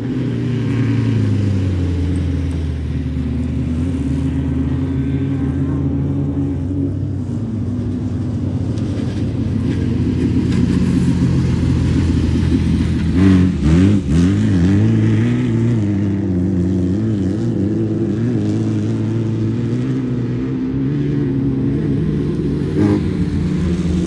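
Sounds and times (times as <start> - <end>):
race car engine revving: 8.8 - 24.0.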